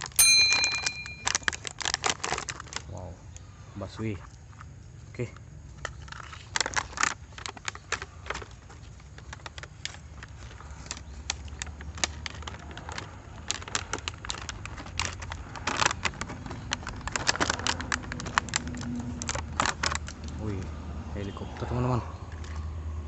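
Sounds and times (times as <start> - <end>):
plastic toy parts clattering: 0.0 - 2.9, 5.8 - 20.6.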